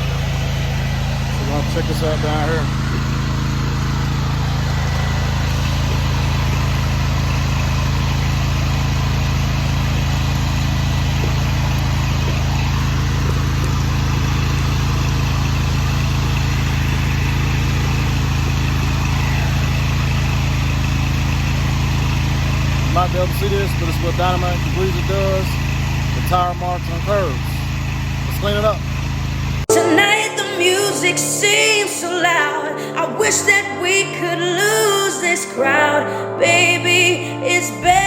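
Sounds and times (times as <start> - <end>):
gas engine running: 0.0 - 38.0.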